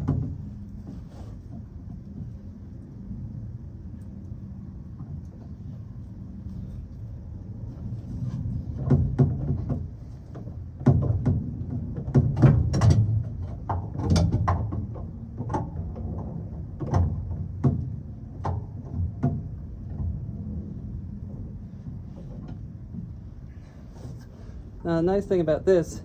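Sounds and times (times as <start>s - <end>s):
metal clanks and knocks: 8.3s - 20.2s
low rumble: 14.7s - 26.0s.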